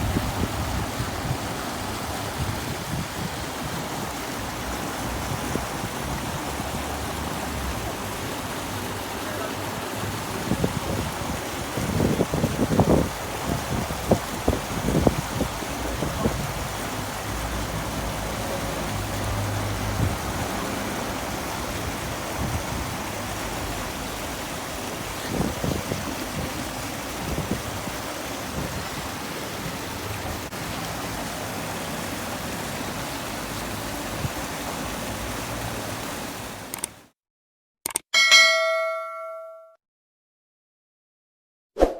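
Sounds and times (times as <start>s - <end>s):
river water rushing: 0.0s - 37.0s
bell-like ding: 38.2s - 39.8s.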